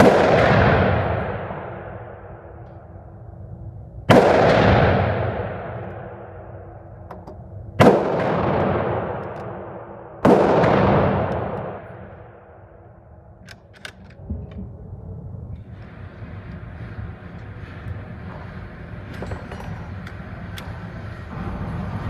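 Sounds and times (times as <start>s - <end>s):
rifle shots echoing: 0.0s - 3.5s, 4.1s - 14.1s.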